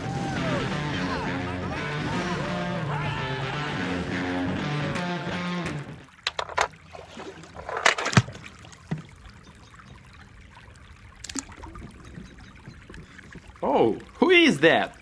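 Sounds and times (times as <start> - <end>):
sharp clicks and knocks: 6.1 - 6.8, 7.5 - 9.1
brief rattle: 6.2 - 6.8, 7.4 - 9.0.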